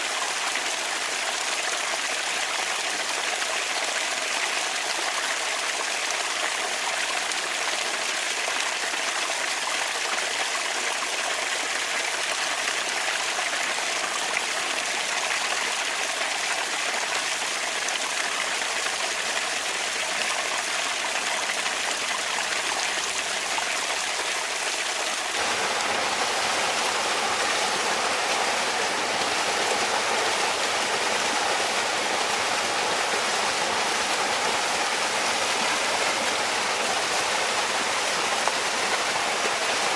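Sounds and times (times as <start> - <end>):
water trickling in fountain: 17.9 - 39.9.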